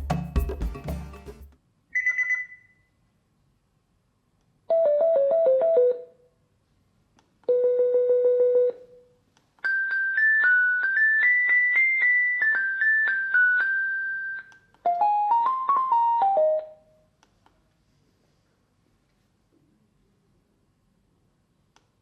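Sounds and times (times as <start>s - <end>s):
music: 0.0s - 1.6s, 9.7s - 16.8s.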